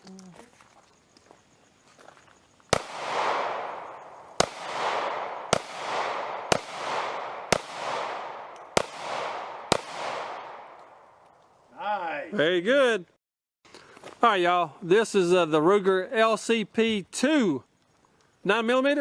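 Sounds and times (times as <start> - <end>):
pistol shots with echo: 2.7 - 11.1.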